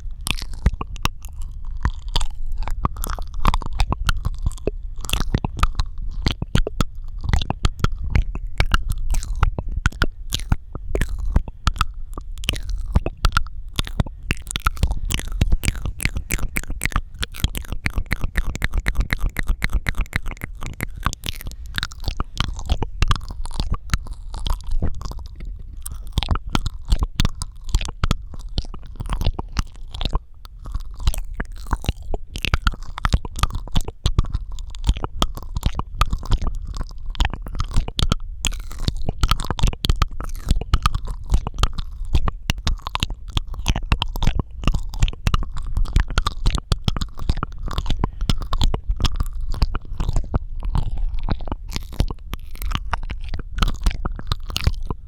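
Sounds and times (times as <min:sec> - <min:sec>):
wet mouth clicks and smacks: 0:00.0 - 0:55.0
low rumble: 0:10.6 - 0:29.2.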